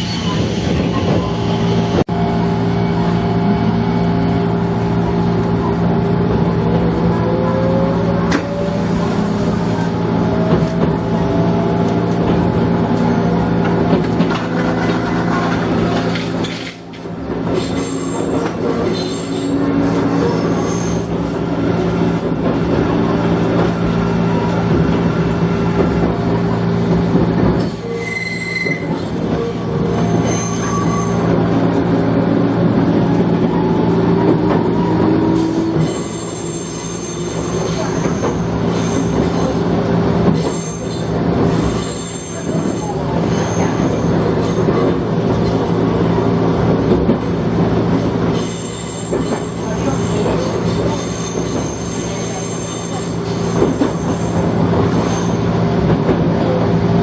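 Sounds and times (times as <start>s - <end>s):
train mechanical hum: 0.0s - 57.0s
rail clatter: 8.2s - 57.0s
wheel squeal: 17.6s - 22.2s, 27.6s - 31.4s, 34.8s - 39.6s, 40.4s - 44.0s, 48.0s - 55.5s.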